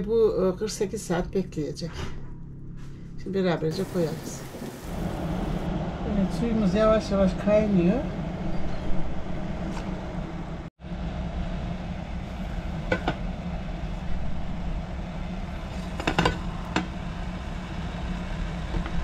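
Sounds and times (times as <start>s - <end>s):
pot simmering: 3.7s - 5.8s, 8.4s - 19.0s.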